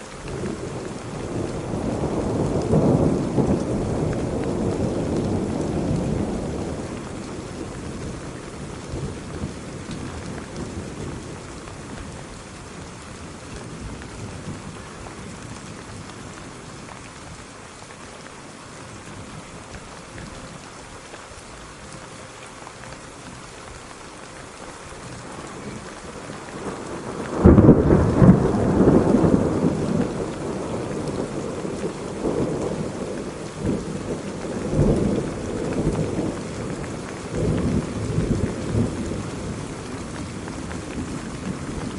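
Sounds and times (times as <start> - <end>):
steady rain: 0.0 - 41.9
thunder rumbling: 0.3 - 16.8, 25.0 - 41.9.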